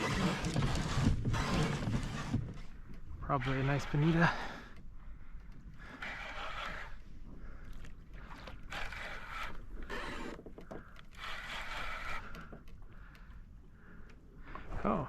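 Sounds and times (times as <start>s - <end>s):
fishing reel scraping whir: 0.0s - 2.4s, 3.3s - 4.5s, 5.8s - 7.1s, 8.5s - 12.6s.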